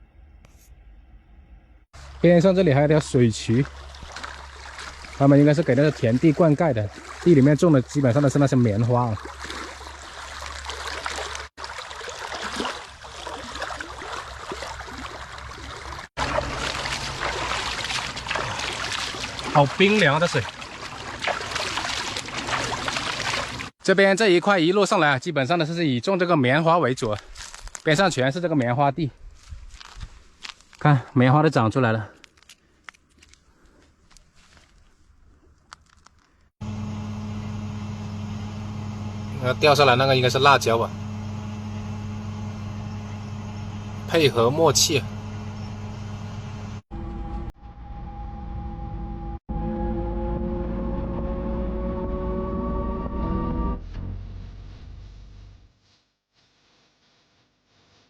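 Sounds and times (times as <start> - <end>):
water rushing in a canal: 2.0 - 23.7, 39.2 - 41.1, 44.0 - 45.4
faint clicks and rustles: 32.1 - 36.5
motor droning: 36.6 - 47.5.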